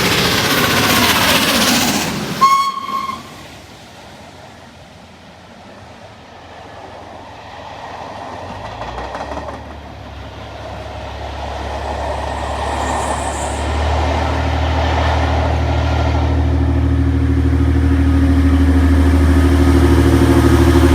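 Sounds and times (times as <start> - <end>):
train wheels clattering over rail joints: 7.8 - 16.2
low engine hum: 9.6 - 20.9.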